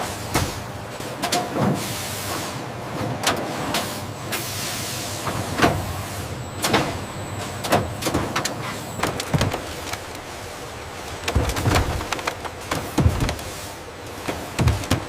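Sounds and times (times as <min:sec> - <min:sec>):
factory machinery humming: 0:00.0 - 0:15.0
sharp knocks and clanks: 0:11.2 - 0:13.6, 0:14.2 - 0:15.0.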